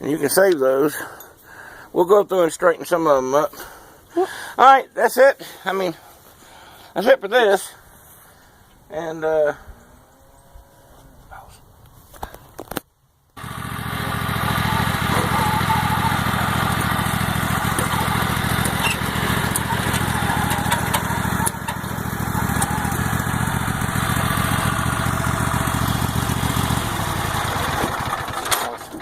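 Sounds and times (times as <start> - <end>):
engine running: 13.4 - 29.0.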